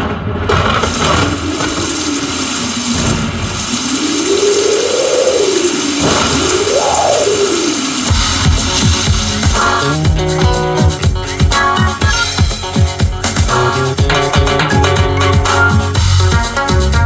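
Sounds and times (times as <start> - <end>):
howling wind whistle: 0.0 - 9.4
rushing wind noise: 0.0 - 11.4
drum beats: 8.1 - 17.0.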